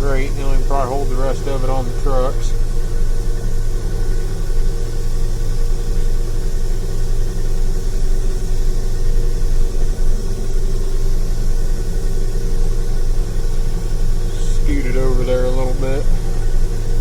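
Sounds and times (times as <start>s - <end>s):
diesel engine droning: 0.0s - 17.0s.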